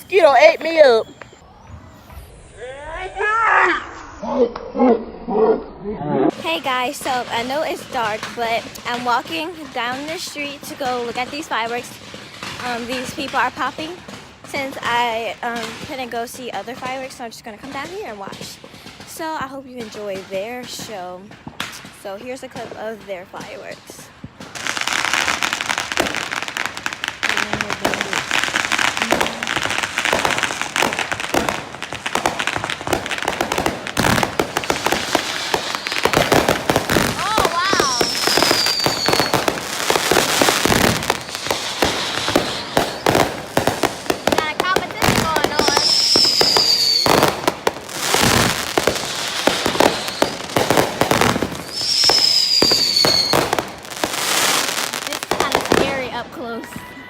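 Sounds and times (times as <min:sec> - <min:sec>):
fireworks crackling and popping: 0:00.0 - 0:03.4, 0:06.1 - 0:57.0
fireworks burst: 0:00.0 - 0:04.0, 0:06.3 - 0:57.0
high falling whistle: 0:00.0 - 0:06.3, 0:37.2 - 0:39.5, 0:45.6 - 0:47.2.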